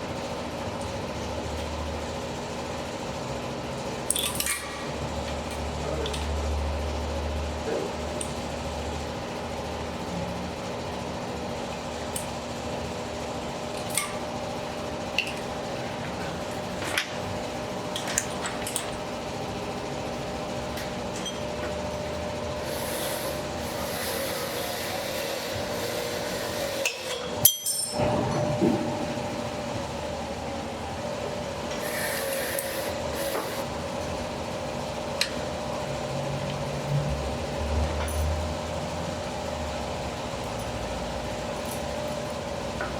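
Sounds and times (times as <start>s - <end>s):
workshop hum: 0.0s - 42.9s
tools clinking on metal: 26.9s - 28.0s.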